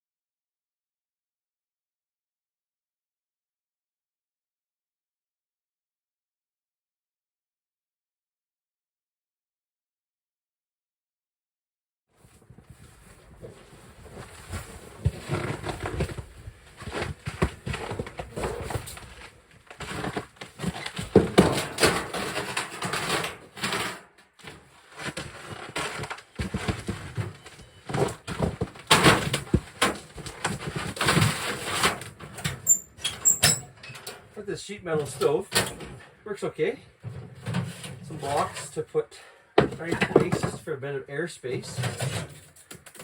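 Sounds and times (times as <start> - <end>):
camp gear rustling and knocking: 12.2 - 34.2, 37.0 - 38.6, 39.6 - 40.6.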